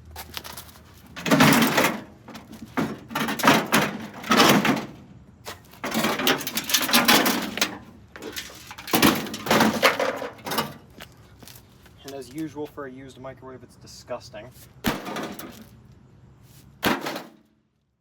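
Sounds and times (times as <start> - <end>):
sheet metal scraping and rattling: 0.5 - 10.9, 14.9 - 15.7.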